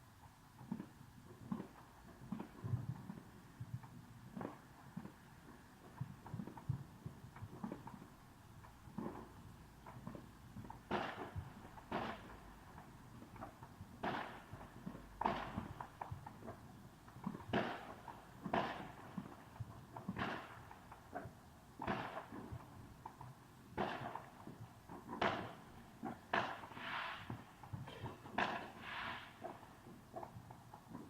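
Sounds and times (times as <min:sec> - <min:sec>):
distant fireworks bangs: 0:08.8 - 0:31.0.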